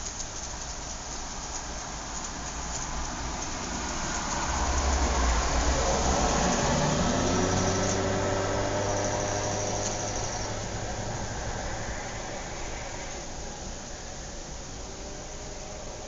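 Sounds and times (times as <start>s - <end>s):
car driving past: 3.6s - 13.6s.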